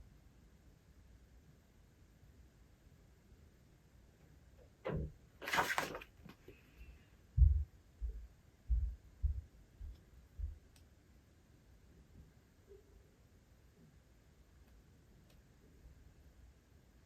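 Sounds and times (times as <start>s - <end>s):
book page turning: 5.4s - 6.6s
soft deep thumps: 7.4s - 10.6s.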